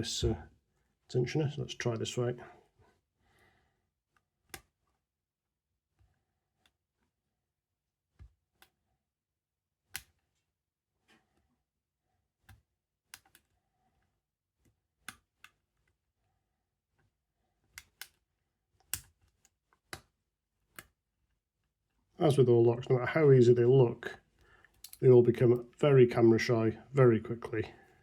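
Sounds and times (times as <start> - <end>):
lock pick clicking in lock: 24.8 - 25.0.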